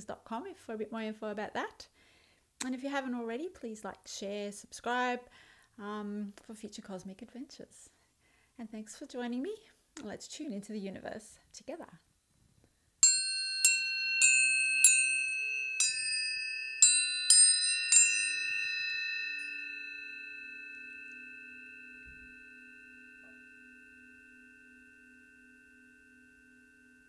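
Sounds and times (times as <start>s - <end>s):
tuning forks struck and ringing: 13.0s - 27.0s.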